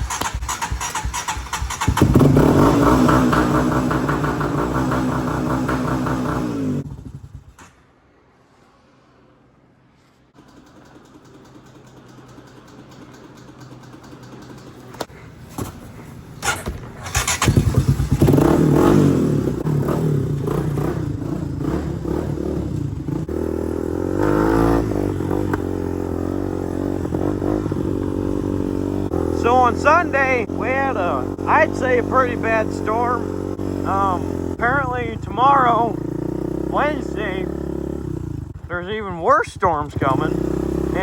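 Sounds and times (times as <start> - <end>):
atv engine running and revving: 0.0 - 7.4, 16.4 - 38.7, 39.7 - 41.0.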